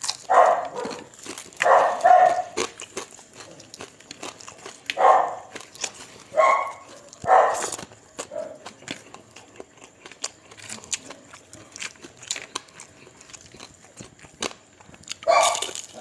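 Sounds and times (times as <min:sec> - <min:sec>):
chewing and crunching: 0:00.0 - 0:16.0
dog barking: 0:00.2 - 0:02.7, 0:04.9 - 0:05.6, 0:06.3 - 0:08.7, 0:15.2 - 0:15.8.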